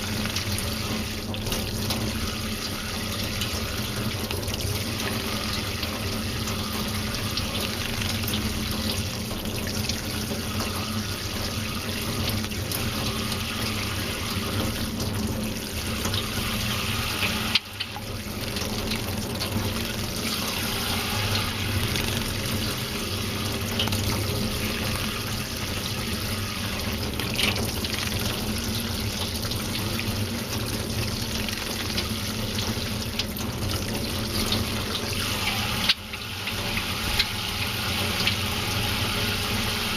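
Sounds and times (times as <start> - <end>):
running water: 0.0 - 39.9.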